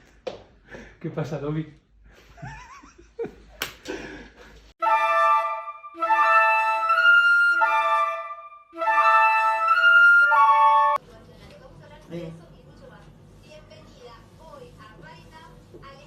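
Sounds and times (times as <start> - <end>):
flute melody: 4.8 - 11.0.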